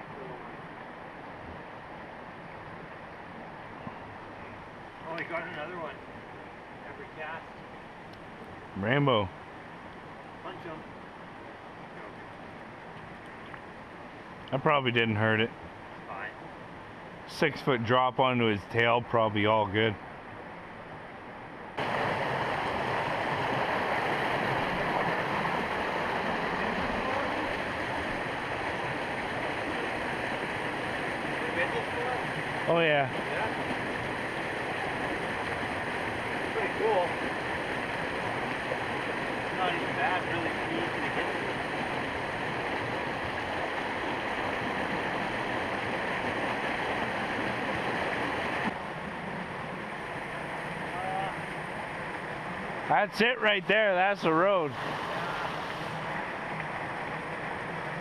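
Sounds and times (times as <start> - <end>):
creek rushing over rocks: 21.8 - 58.0.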